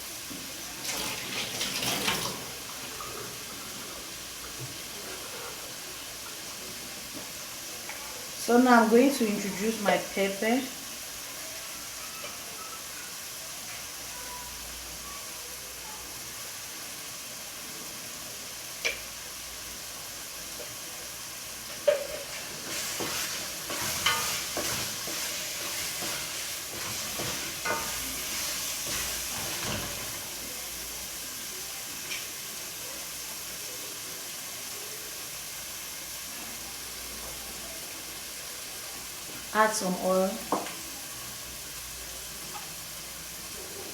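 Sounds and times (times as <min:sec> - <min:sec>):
sauce sizzling in a pot: 0:00.0 - 0:43.9
sauce stirred and scraped: 0:21.8 - 0:30.0.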